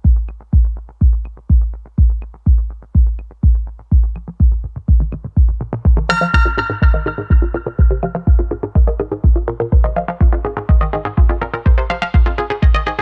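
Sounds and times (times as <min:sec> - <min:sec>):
electronic beat: 0:00.0 - 0:13.0
keyboard melody: 0:06.1 - 0:13.0.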